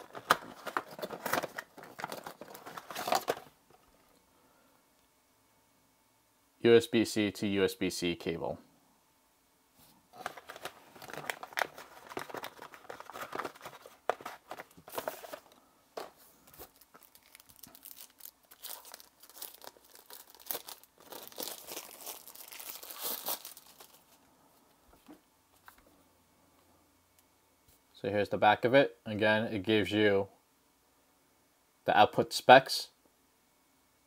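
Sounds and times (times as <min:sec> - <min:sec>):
packaging crinkling and tearing: 0:00.0 - 0:03.5, 0:10.2 - 0:24.2.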